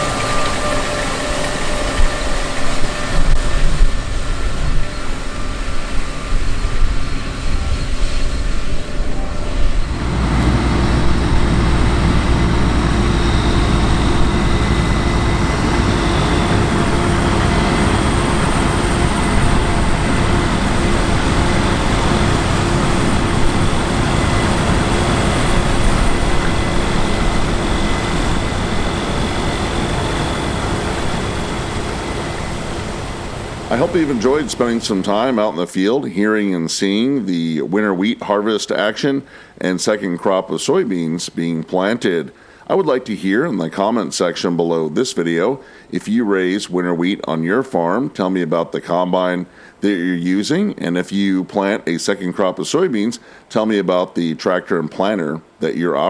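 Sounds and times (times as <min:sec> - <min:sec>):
diesel engine rumble: 0:00.0 - 0:35.5
mechanical whine: 0:00.0 - 0:35.6.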